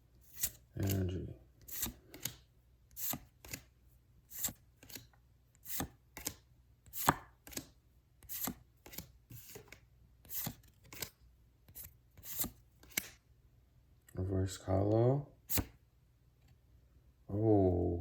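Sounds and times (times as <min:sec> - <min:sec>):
trading cards swishing and snapping: 0:00.2 - 0:03.7, 0:04.3 - 0:13.2, 0:15.5 - 0:15.8.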